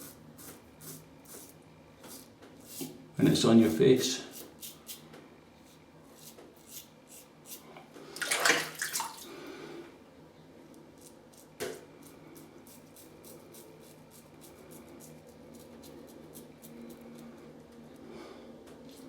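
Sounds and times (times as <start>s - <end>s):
water splashing: 8.2s - 9.3s.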